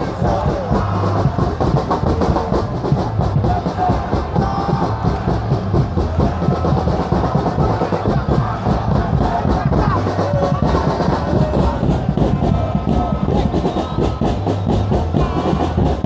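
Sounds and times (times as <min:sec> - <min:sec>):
drums beaten fast: 0:00.0 - 0:16.0
stadium crowd voices: 0:00.0 - 0:16.0.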